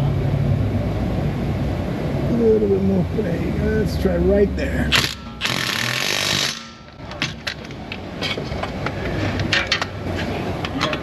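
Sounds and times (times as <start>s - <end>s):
metallic clicks and knocks: 6.4s - 10.0s, 10.6s - 11.0s.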